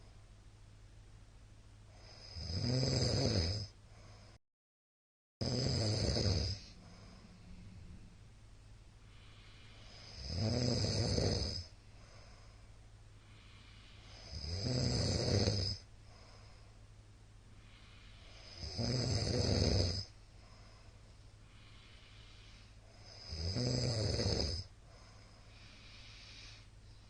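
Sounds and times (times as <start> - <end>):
man snoring loudly: 2.0 - 3.7, 5.4 - 7.1, 9.3 - 11.7, 14.0 - 15.9, 17.8 - 20.1, 22.9 - 24.7.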